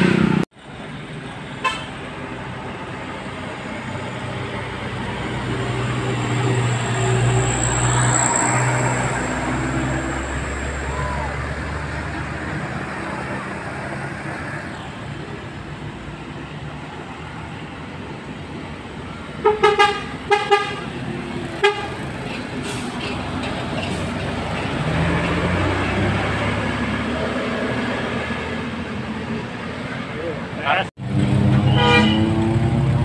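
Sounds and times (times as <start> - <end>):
road and engine noise: 0.0 - 33.0
bus air horn toots: 1.6 - 2.0, 19.4 - 21.0, 21.6 - 22.1, 31.5 - 32.6.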